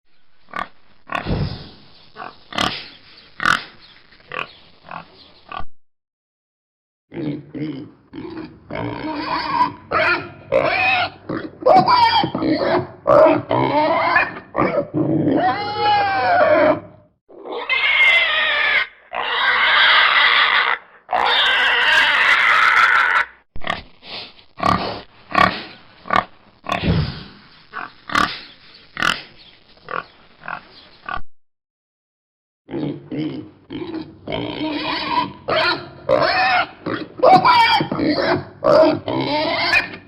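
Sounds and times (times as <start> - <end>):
pig squealing: 0.5 - 3.6, 7.1 - 23.8, 27.8 - 28.4, 32.7 - 40.0
pig grunting: 0.5 - 5.7, 7.1 - 23.9, 24.6 - 31.2, 32.7 - 40.0.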